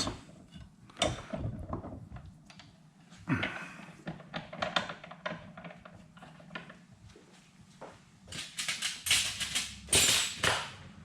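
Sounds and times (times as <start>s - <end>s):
small metal parts clicking and knocking: 8.3s - 10.8s.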